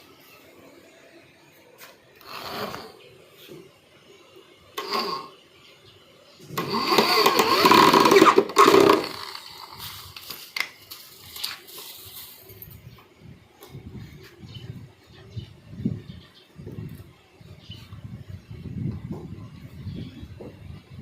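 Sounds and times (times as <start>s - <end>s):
motor-driven machine running: 6.6s - 9.4s.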